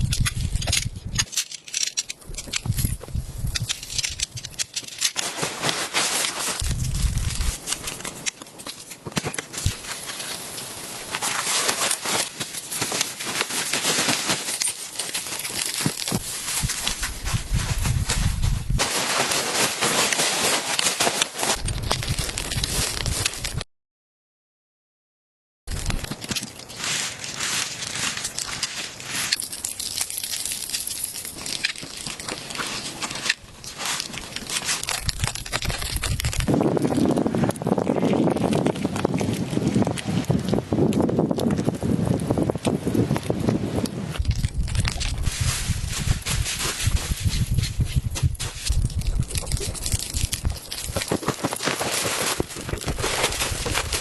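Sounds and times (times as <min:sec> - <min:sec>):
crackling and crunching clicks: 0:00.0 - 0:23.6, 0:25.7 - 0:54.0
blizzard wind hissing: 0:42.8 - 0:50.8.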